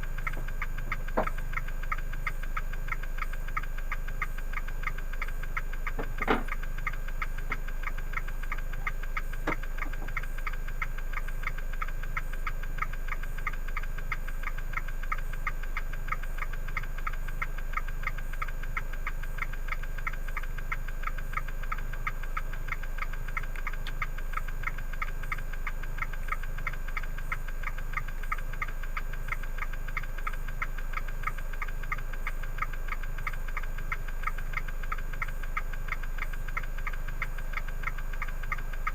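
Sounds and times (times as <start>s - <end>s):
car engine hum: 0.0s - 10.9s
rapid engine ticking: 0.0s - 38.9s.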